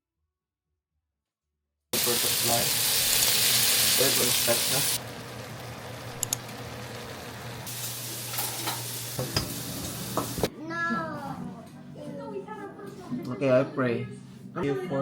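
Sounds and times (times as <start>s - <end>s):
eggs sizzling in a pan: 2.0s - 10.5s.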